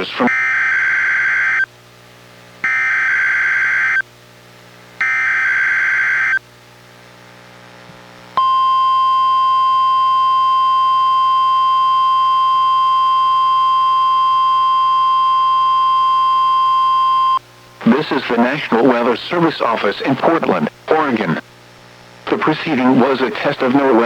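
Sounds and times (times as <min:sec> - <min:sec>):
steady warning alarm tone: 0:00.0 - 0:01.7, 0:02.6 - 0:04.0, 0:05.0 - 0:06.4, 0:08.4 - 0:20.4.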